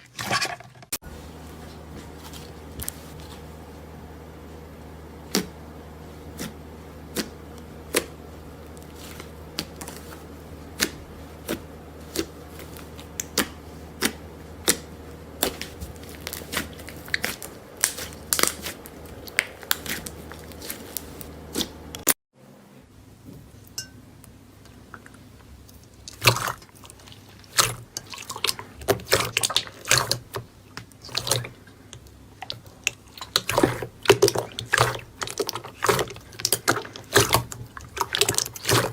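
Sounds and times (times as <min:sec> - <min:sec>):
steady low hum: 0:01.0 - 0:26.0
slime crackling: 0:05.2 - 0:22.0.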